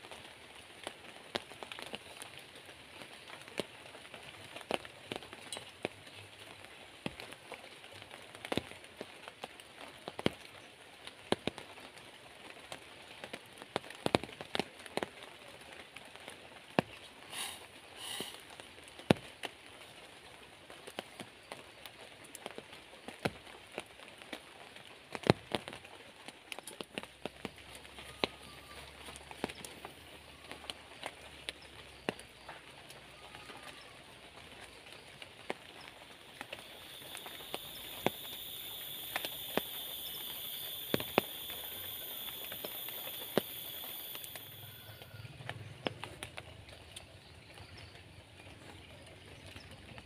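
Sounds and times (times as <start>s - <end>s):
faint high hiss: 17.2s - 18.6s, 36.1s - 45.3s
insects chirring: 35.6s - 45.3s.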